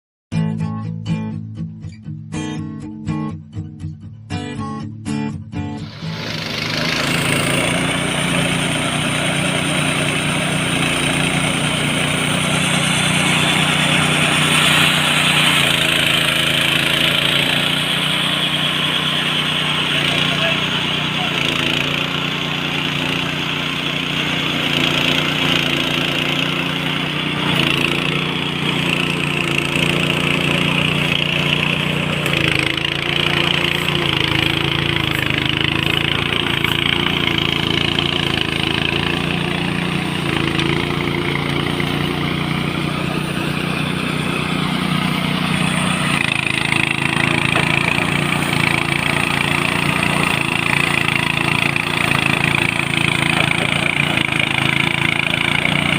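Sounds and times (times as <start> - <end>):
small engine running: 5.7 - 55.9
rushing hiss: 5.8 - 9.6.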